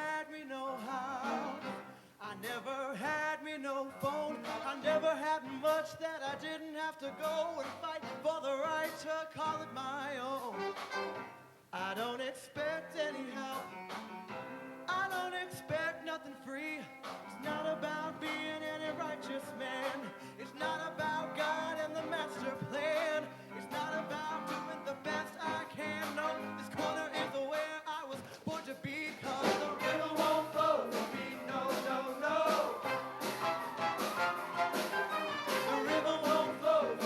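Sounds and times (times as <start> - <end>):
choir singing with live band: 17.0 - 27.4, 29.0 - 37.0.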